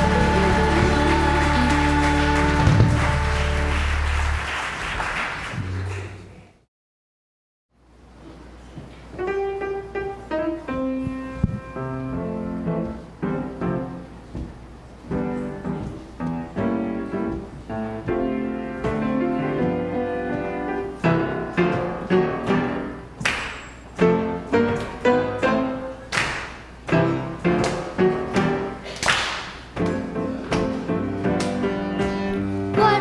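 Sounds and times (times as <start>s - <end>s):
keyboard chords with bass line: 30.0s - 33.0s.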